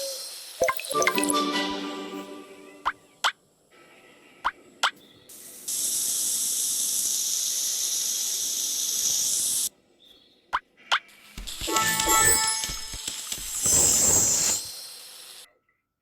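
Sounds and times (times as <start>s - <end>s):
high spray hiss: 0.0s - 2.5s, 5.3s - 9.7s, 11.2s - 15.5s
music: 0.9s - 2.9s, 11.5s - 13.3s.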